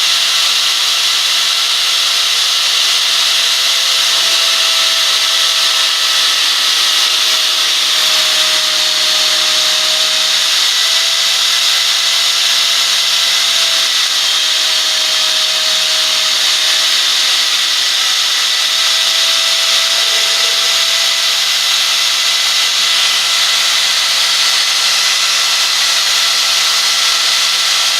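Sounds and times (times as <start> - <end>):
grinding wheel hissing grind: 0.0 - 27.9
motor whine: 0.0 - 27.9.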